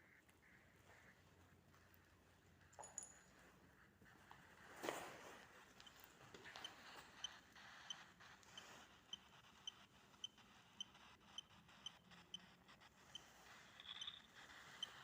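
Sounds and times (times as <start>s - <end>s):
faint high-pitched chirp: 5.8s - 15.0s.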